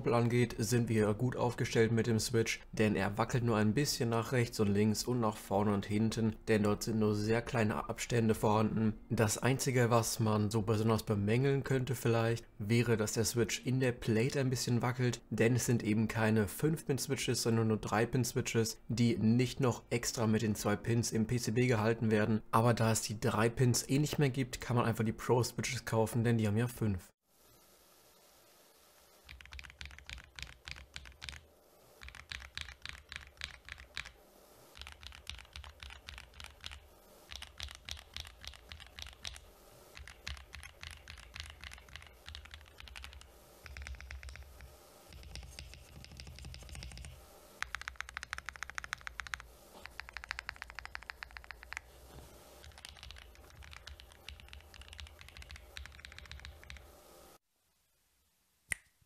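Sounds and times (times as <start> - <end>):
mechanical keyboard typing: 29.2 - 31.4, 32.0 - 51.9, 52.6 - 56.9.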